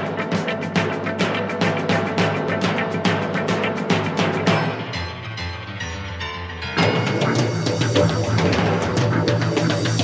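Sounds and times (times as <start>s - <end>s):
orchestral music with drums: 0.0s - 10.0s.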